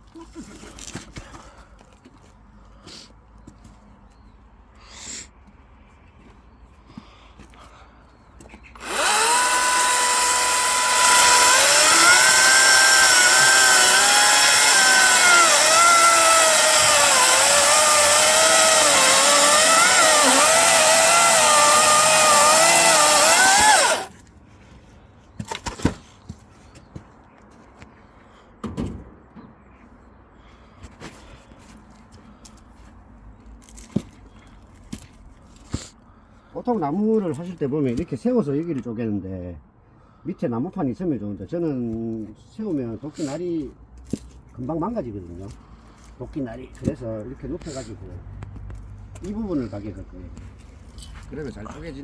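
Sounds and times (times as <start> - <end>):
electric chainsaw cutting log: 8.8 - 24.1.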